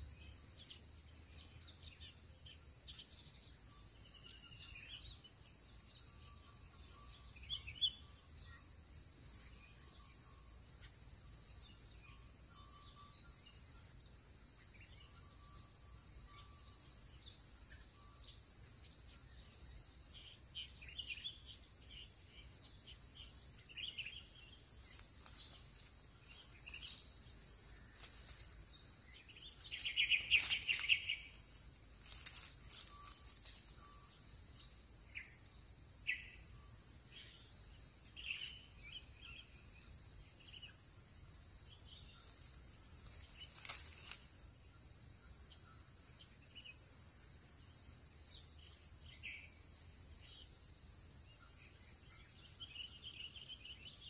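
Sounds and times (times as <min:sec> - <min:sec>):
high-pitched insect drone: 0:00.0 - 0:54.0
short insect chirps: 0:14.6 - 0:39.8, 0:41.6 - 0:46.8.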